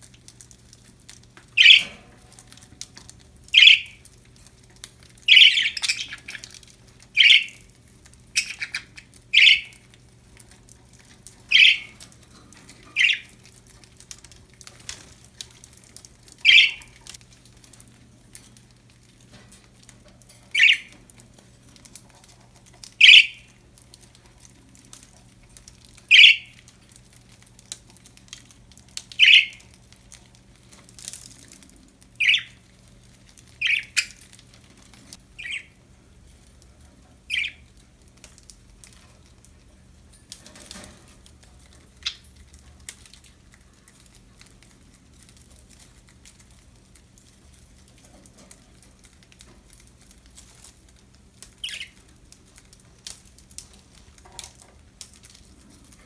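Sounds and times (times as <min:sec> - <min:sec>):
faint ticks and rustles: 0:00.0 - 0:56.0
budgerigar contact calls: 0:01.6 - 0:01.9, 0:08.4 - 0:09.7, 0:11.5 - 0:11.9, 0:16.4 - 0:16.8, 0:23.0 - 0:23.4, 0:26.1 - 0:26.5, 0:29.2 - 0:29.6.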